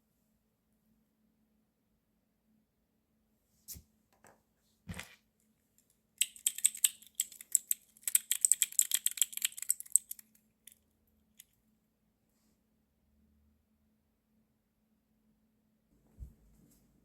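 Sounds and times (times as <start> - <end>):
rapid light clicking and clattering: 6.2 - 10.8.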